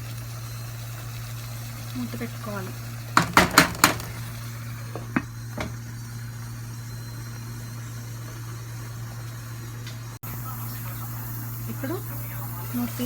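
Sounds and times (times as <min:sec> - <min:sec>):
pot lid clinking: 0:03.2 - 0:04.3.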